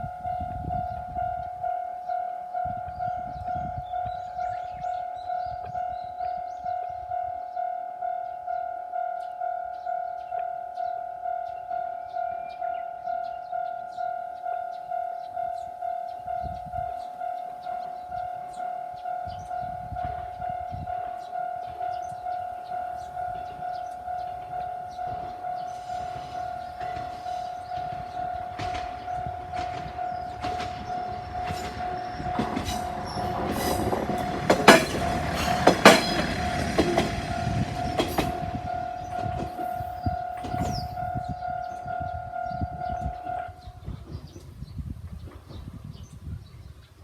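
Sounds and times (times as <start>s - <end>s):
diesel railcar passing: 8.3s - 45.9s
level-crossing alarm ringing: 10.6s - 43.6s
train wheels clacking: 25.1s - 41.0s.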